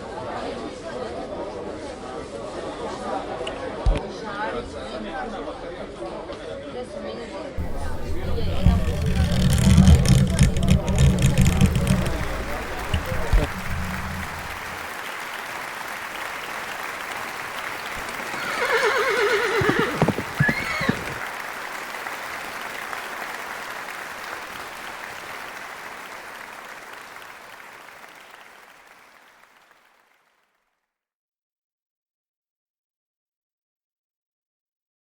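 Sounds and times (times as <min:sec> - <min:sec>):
applause: 0:07.6 - 0:30.9
horse whinnying: 0:18.2 - 0:21.2.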